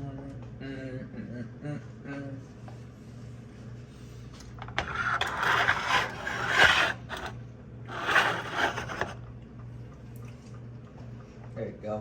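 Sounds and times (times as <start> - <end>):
scraping and rustling handling noise: 4.6 - 7.3, 7.9 - 9.2.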